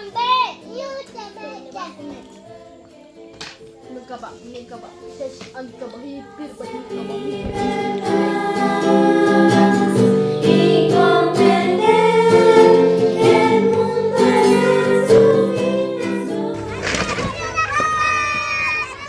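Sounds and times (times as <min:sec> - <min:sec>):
plucked string accompaniment: 0:00.0 - 0:18.0
group of voices singing: 0:01.9 - 0:16.8.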